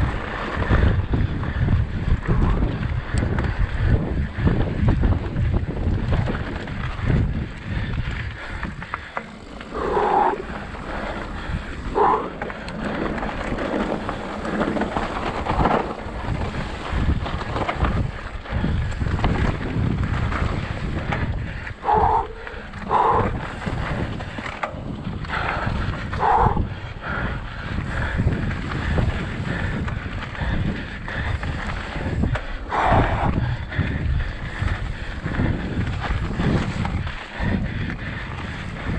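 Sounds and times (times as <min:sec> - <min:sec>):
bike rattling over trail: 0:00.0 - 0:38.9
wind buffeting microphone: 0:00.0 - 0:38.9.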